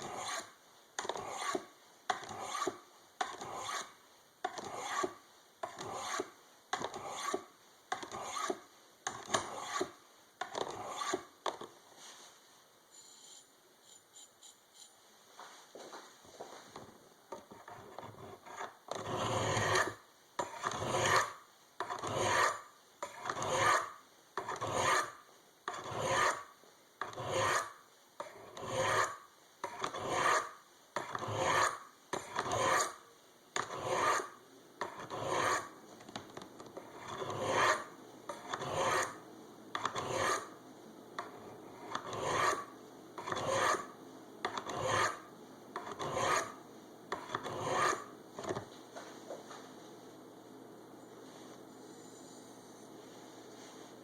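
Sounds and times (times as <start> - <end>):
knife rasping on ceramic rods: 0.0 - 8.6, 9.2 - 11.3, 17.4 - 33.0, 33.6 - 35.8, 36.8 - 39.2, 39.8 - 40.6, 41.2 - 48.1.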